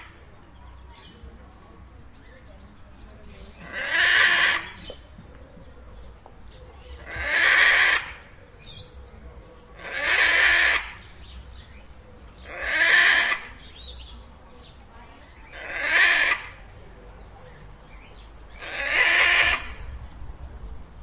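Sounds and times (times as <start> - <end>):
macaw squawking: 9.8 - 11.0, 12.5 - 13.6, 18.6 - 19.8.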